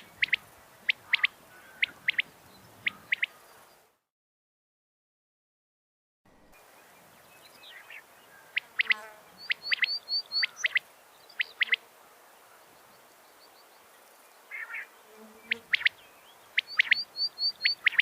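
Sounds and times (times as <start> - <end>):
quail calling: 0.0 - 3.5, 8.5 - 10.8, 11.4 - 11.8, 14.5 - 14.9, 15.5 - 16.0, 16.6 - 18.0.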